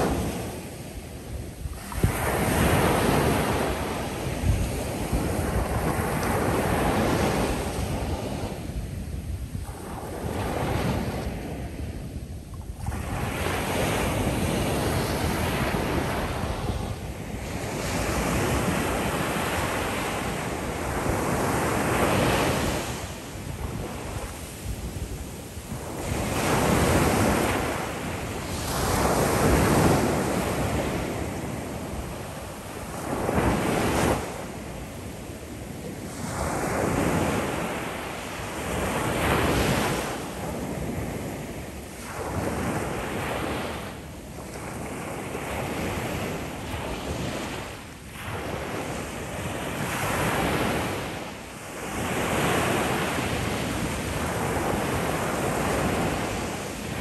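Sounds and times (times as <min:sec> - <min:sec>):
ocean waves breaking: 0:00.0 - 0:09.0, 0:12.8 - 0:57.0
wind buffeting microphone: 0:00.0 - 0:57.0.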